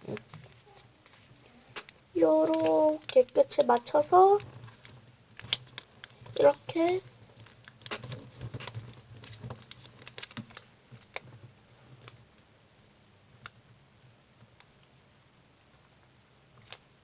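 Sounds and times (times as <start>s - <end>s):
paper being folded and creased: 2.3s - 11.3s.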